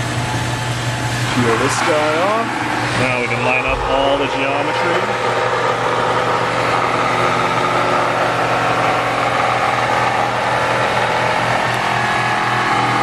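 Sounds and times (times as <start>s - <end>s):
motor droning hum: 1.2s - 5.5s.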